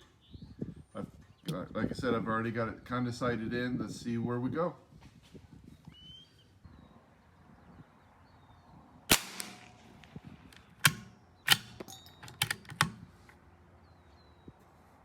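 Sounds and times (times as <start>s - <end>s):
rifle shot: 9.1s - 13.0s
rifle bolt clicking: 10.5s - 13.0s.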